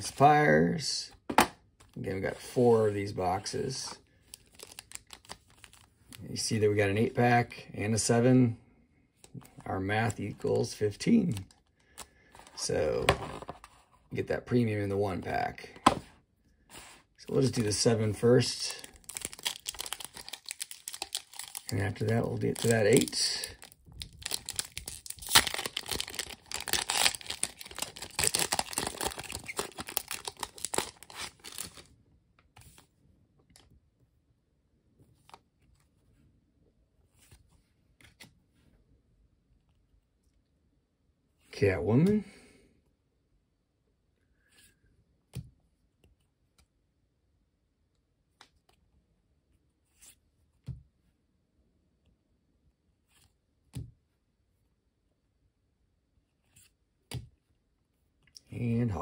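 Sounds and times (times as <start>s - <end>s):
wrapper tearing and crinkling: 4.3s - 5.9s, 18.7s - 31.9s.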